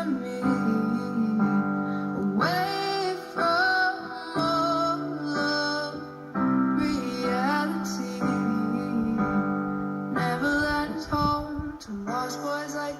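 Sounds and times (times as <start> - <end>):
woman singing slow melody: 6.8 - 12.9.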